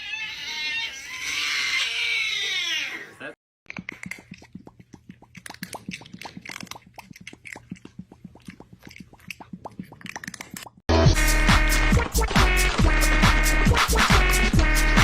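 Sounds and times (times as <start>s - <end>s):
small wet clicks and plops: 3.7s - 10.8s.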